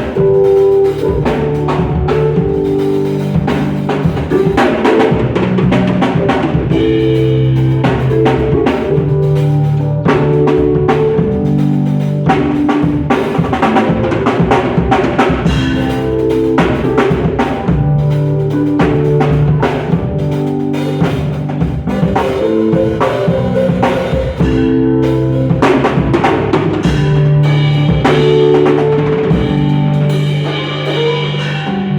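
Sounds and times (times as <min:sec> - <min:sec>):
drum kit playing: 0:00.0 - 0:31.9
sustained pitched notes: 0:00.0 - 0:31.9.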